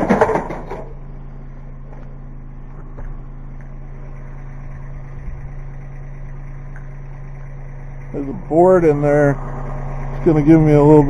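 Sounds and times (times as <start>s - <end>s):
engine clatter: 0.0s - 11.0s
tractor diesel engine humming: 0.0s - 11.0s.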